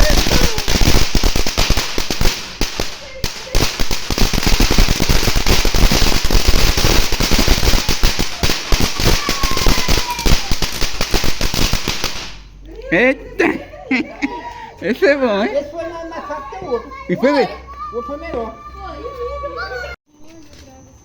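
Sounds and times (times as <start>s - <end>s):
firecrackers crackling: 0.0s - 12.6s.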